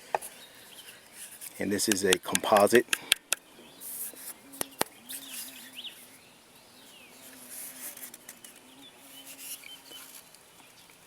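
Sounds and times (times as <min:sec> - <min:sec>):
birds chirping: 0:00.2 - 0:11.0
sharp clicks: 0:01.8 - 0:03.4
bumblebee buzzing in flight: 0:03.8 - 0:10.2.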